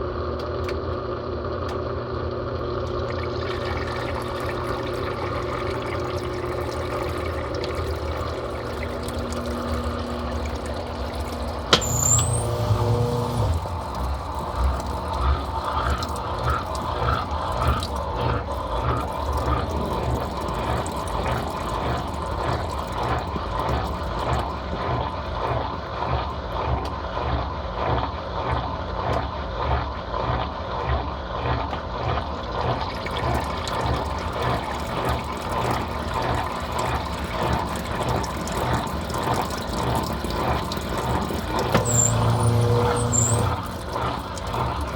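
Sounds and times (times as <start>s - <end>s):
washing machine hum: 0.0s - 44.9s
laundry churning in water: 2.2s - 44.9s
washing machine click: 7.1s - 18.0s, 41.0s - 44.9s.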